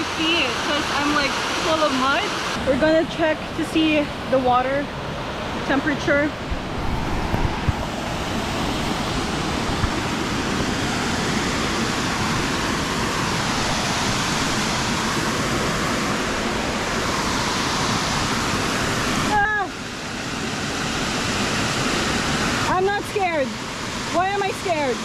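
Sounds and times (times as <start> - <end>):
waterfall rushing: 0.0 - 24.5
low bumps: 6.4 - 10.4.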